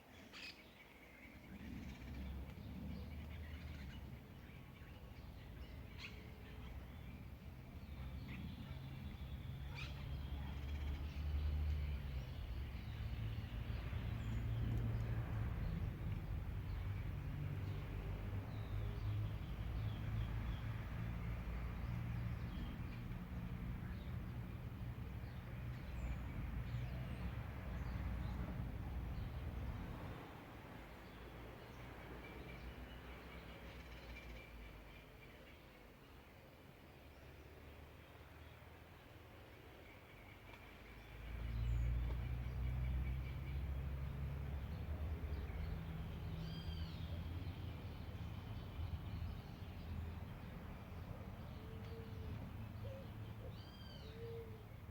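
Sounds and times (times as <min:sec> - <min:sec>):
bird calls: 0:51.5 - 0:54.8.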